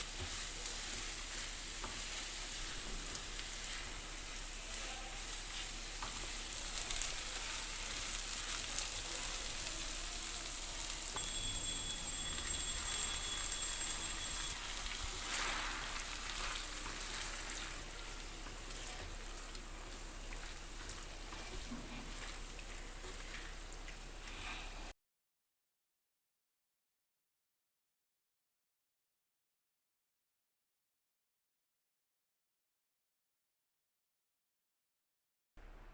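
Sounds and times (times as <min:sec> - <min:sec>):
food sizzling in hot oil: 0:00.0 - 0:24.9
faint high steady tone: 0:09.1 - 0:14.8.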